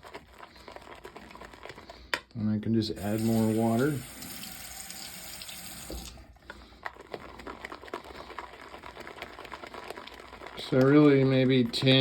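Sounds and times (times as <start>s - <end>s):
water tap running: 2.9s - 6.3s
shaving brush whipping lather: 3.0s - 4.4s.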